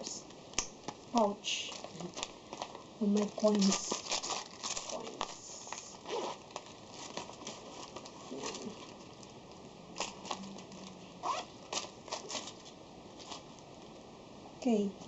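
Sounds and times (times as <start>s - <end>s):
pouch rustling: 1.7s - 9.2s, 10.0s - 13.5s.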